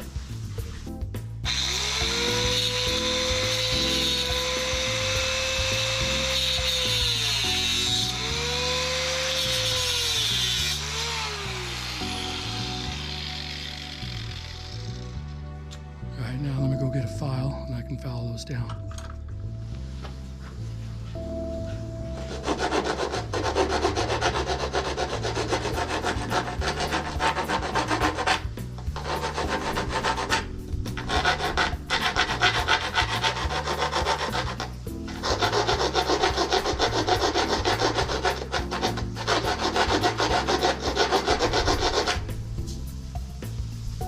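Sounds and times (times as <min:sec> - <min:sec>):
file rasping on steel: 0:01.5 - 0:15.3, 0:22.2 - 0:42.6.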